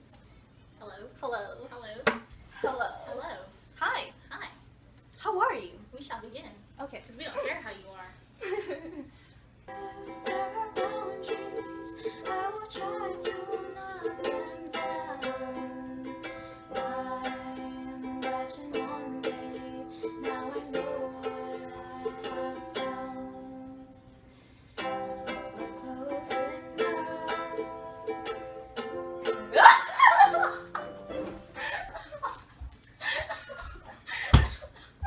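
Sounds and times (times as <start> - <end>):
plucked string instrument melody: 9.7 - 23.8, 24.8 - 29.7.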